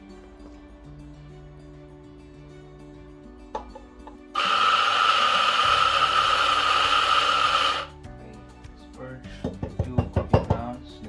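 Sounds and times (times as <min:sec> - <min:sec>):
coffee grinder whine: 0:04.4 - 0:07.9.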